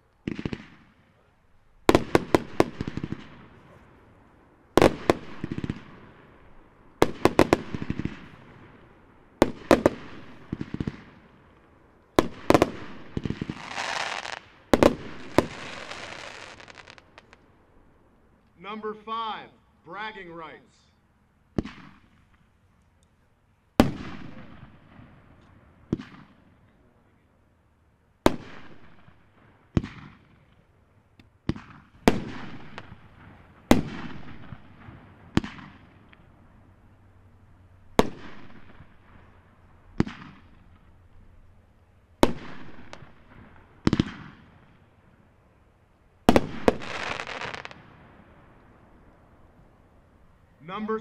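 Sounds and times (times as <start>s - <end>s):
firework crackle and hiss: 0.0s - 17.9s, 21.5s - 26.7s, 28.2s - 51.0s
firework bangs with echo: 0.2s - 1.1s, 1.9s - 3.9s, 4.8s - 6.4s, 7.0s - 11.4s, 12.2s - 17.4s, 21.6s - 22.2s, 23.8s - 26.6s, 28.3s - 30.5s, 31.4s - 36.1s, 38.0s - 40.9s, 42.2s - 44.8s, 46.2s - 48.6s.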